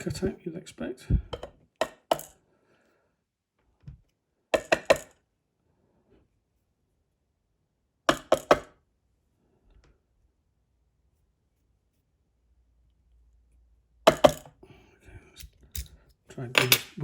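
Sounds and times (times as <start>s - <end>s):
metal lock parts clinking: 15.4s - 16.0s.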